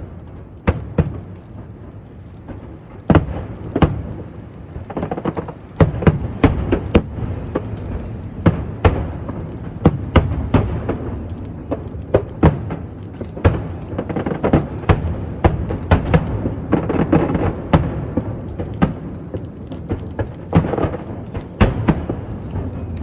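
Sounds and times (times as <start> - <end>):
fireworks bursting: 0.0 - 23.0
low rumble: 21.7 - 23.0.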